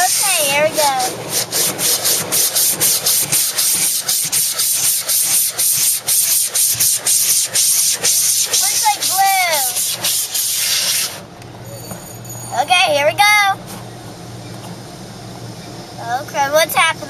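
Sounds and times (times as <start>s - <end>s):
car wash brushes swishing: 0.0s - 11.2s.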